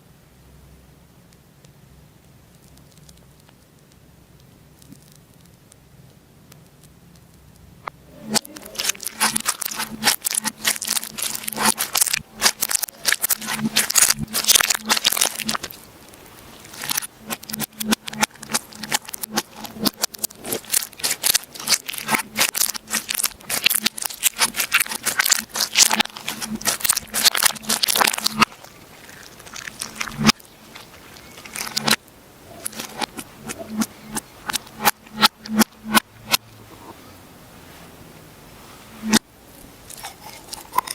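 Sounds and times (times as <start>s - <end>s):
slime crackling and popping: 6.5s - 36.4s.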